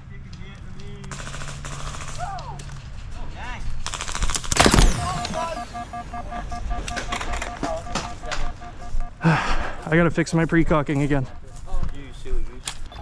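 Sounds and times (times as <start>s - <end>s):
airsoft rifle full-auto burst: 3.9s - 8.8s.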